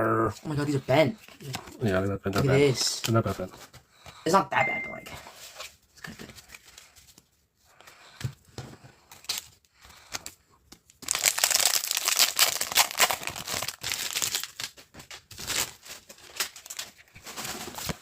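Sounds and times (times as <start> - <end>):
foil wrapper crinkling: 10.9 - 18.0.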